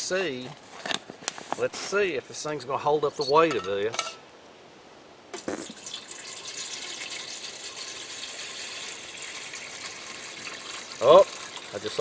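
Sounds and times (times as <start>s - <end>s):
water pouring into a pot: 5.6s - 12.0s.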